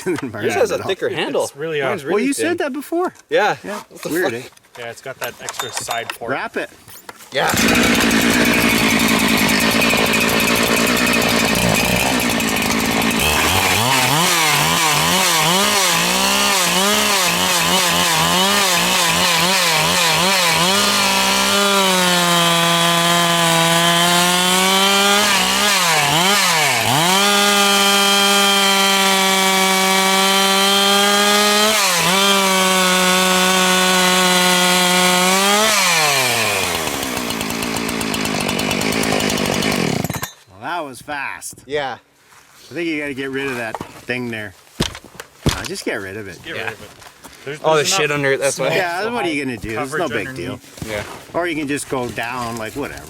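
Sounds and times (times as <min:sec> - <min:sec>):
chainsaw cutting log: 0:07.4 - 0:40.3.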